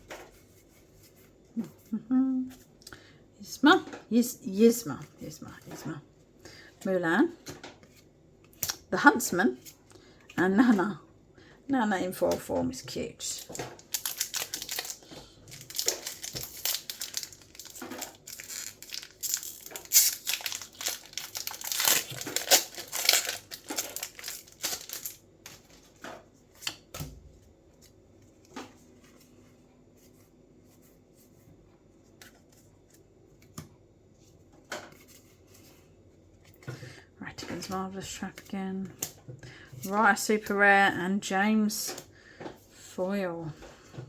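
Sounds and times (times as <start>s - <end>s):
plastic wrapper tearing and crumpling: 13.4s - 25.2s.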